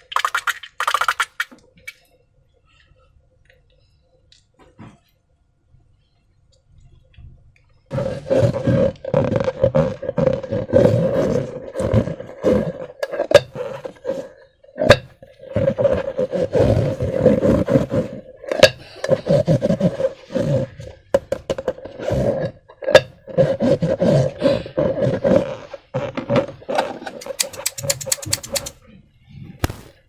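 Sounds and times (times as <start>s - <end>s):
slime squelching: 27.2s - 28.7s
balloon pops: 29.6s - 30.0s.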